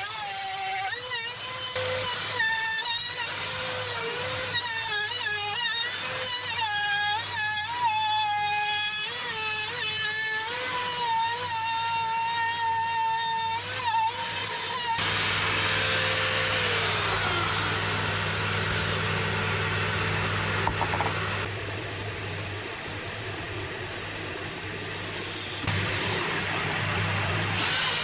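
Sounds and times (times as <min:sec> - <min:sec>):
electric motor humming: 0:14.9 - 0:28.0
falling motor whine: 0:15.0 - 0:28.0.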